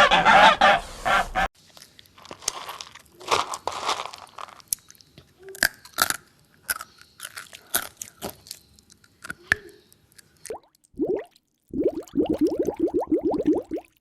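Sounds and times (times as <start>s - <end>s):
sharp crunches and cracks: 1.6s - 10.5s.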